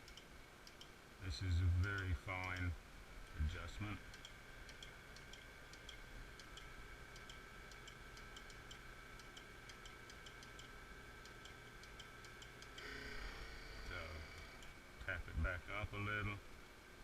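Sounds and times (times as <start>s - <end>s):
ticking of paired clicks: 0.0s - 1.0s, 1.8s - 2.7s, 4.1s - 12.9s.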